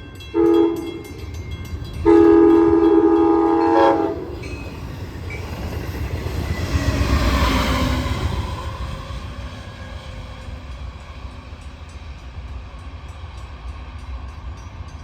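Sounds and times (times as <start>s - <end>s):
train wheels rumbling on rail: 0.0s - 15.0s.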